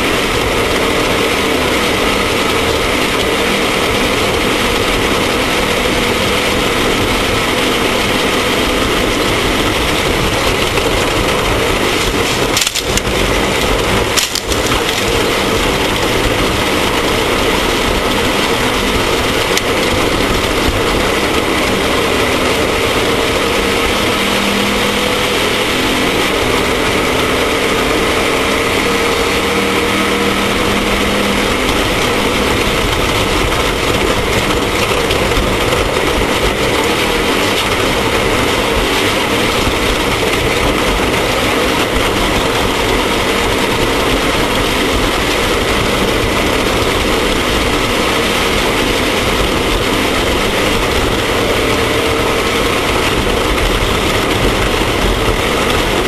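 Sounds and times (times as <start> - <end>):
off-road vehicle engine running hard: 0.0 - 56.0
rattling: 0.3 - 56.0.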